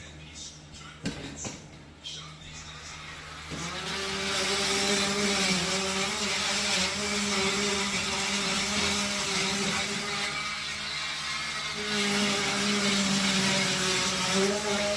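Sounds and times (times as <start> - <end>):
power tool cutting into wall: 3.0 - 14.9.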